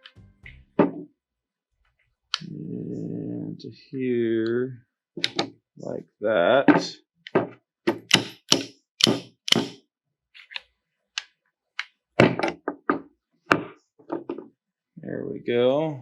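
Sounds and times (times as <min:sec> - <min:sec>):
hard knocks on metal parts: 0:07.4 - 0:09.8.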